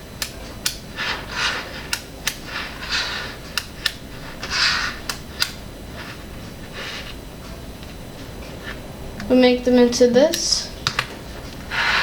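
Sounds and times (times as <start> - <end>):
magnetic balls clicking together: 0.2 - 5.6.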